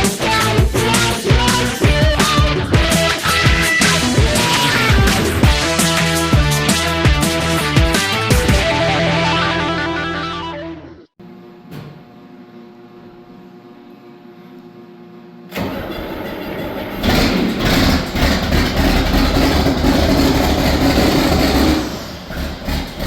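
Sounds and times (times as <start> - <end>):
tractor engine cranking and running: 2.7 - 6.6, 15.5 - 23.0.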